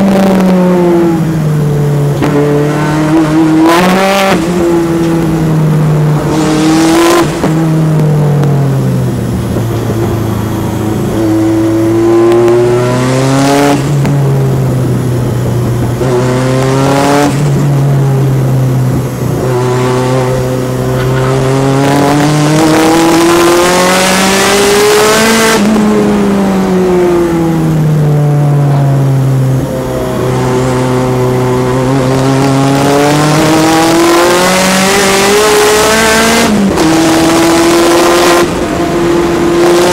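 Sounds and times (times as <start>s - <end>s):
car engine accelerating: 0.0s - 39.9s.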